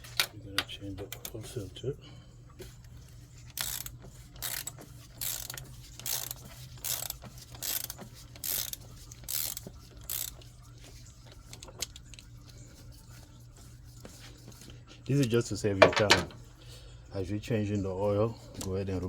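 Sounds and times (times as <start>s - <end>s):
ratchet wrench clicking: 3.5s - 10.4s.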